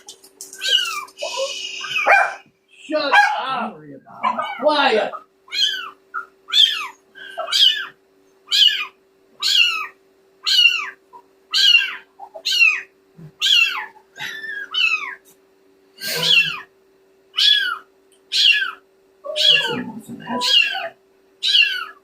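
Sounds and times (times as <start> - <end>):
kitten mewing: 0.0 - 2.4, 5.5 - 15.2, 16.0 - 16.7, 17.4 - 22.0.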